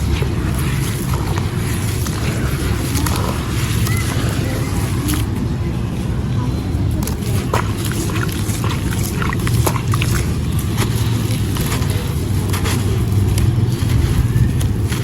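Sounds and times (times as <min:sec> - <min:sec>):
stone chunks crumbling in water: 0:07.0 - 0:12.0.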